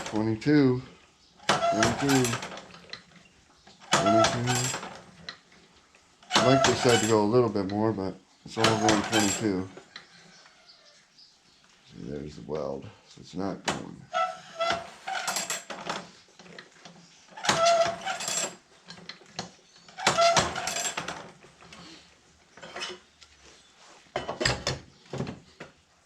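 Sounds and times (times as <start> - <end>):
metallic clacking with squeak: 1.4 - 5.4, 6.2 - 10.4, 13.7 - 21.8, 22.6 - 23.1.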